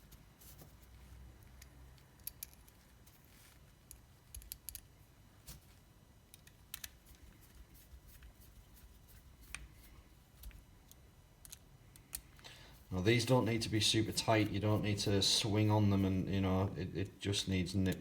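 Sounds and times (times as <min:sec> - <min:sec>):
small metal parts clicking: 0:01.4 - 0:03.0, 0:03.8 - 0:04.9.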